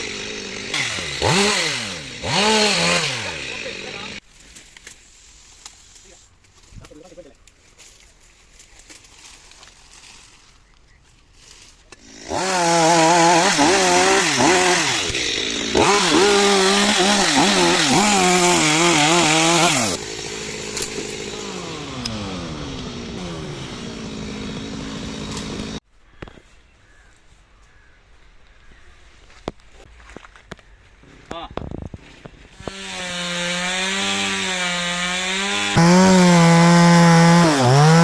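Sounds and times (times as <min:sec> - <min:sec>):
chainsaw cutting branch: 0:00.0 - 0:04.2, 0:12.0 - 0:25.8, 0:32.6 - 0:38.0.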